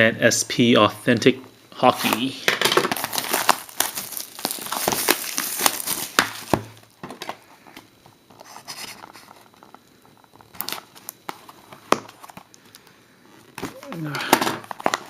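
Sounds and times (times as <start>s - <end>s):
plastic wrapping crinkling and tearing: 2.0s - 7.4s, 8.2s - 12.8s, 13.4s - 15.0s.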